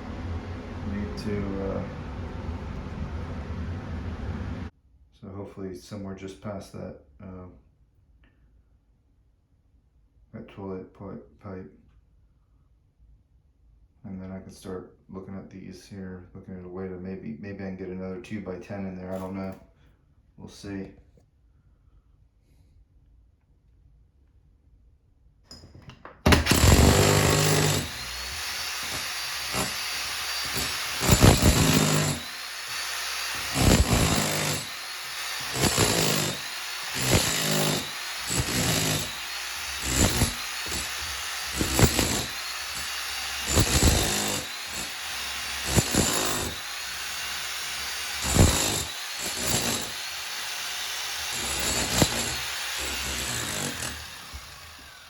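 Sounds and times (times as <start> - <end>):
power saw cutting wood: 0.0 - 4.7, 26.3 - 55.0.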